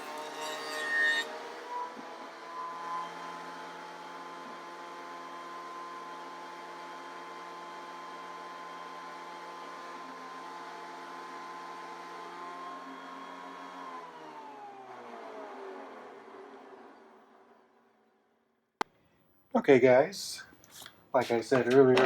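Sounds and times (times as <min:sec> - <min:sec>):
woodworking machine motor hum: 0:00.0 - 0:17.0.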